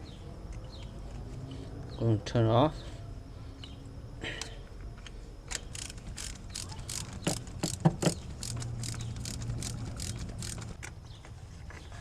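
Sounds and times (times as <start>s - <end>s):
hand ratchet clicking: 5.5s - 10.8s.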